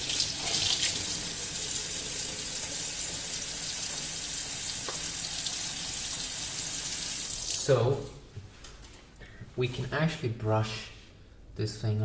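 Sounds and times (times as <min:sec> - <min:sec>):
tap running into sink: 0:04.8 - 0:05.2.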